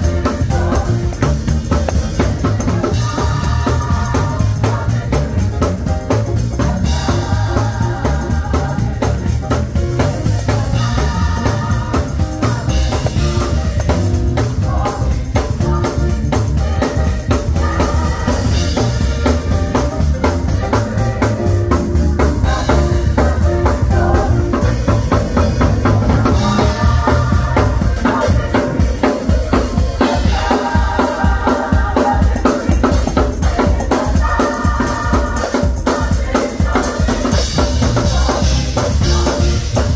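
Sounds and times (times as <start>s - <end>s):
drum kit beat: 0.0s - 39.9s
gospel choir singing: 0.0s - 39.9s
organ: 0.0s - 39.9s.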